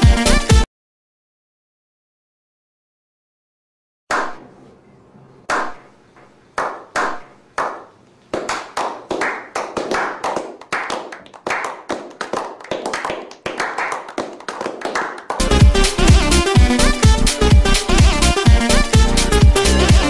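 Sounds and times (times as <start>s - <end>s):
electronic dance music: 0.0s - 0.7s, 15.4s - 20.0s
hand claps with reverb: 5.5s - 5.8s, 6.6s - 15.5s.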